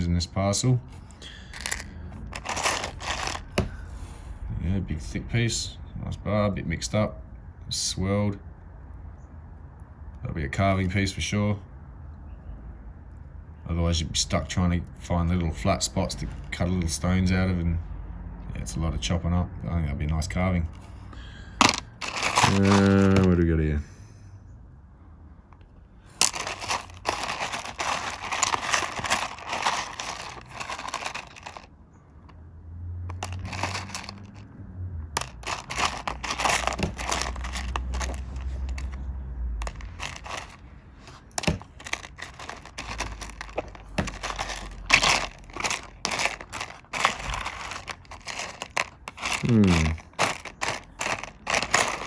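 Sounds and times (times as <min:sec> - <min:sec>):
stones clicking together: 0:01.5 - 0:03.7, 0:21.6 - 0:23.3, 0:26.2 - 0:31.7, 0:35.2 - 0:39.0, 0:39.6 - 0:52.0
plastic bag crinkling: 0:01.6 - 0:03.6, 0:21.8 - 0:23.3, 0:26.2 - 0:31.7, 0:33.2 - 0:34.4, 0:35.2 - 0:38.9, 0:39.6 - 0:52.0.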